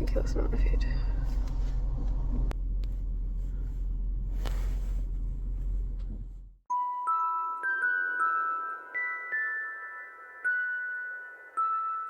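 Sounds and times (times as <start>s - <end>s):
car rumble inside cabin: 0.0s - 6.6s.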